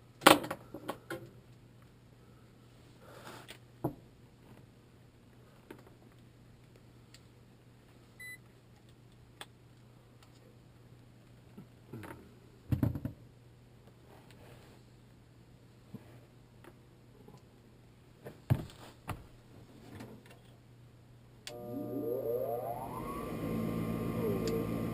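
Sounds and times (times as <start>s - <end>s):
low hum: 21.4s - 24.9s.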